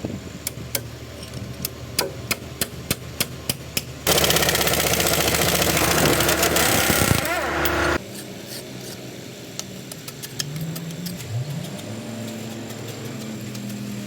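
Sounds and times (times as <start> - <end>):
diesel engine running: 4.1 - 8.0.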